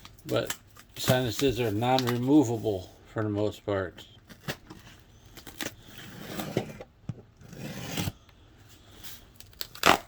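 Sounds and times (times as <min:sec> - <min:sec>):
knife slicing packing tape: 0:09.5 - 0:10.0.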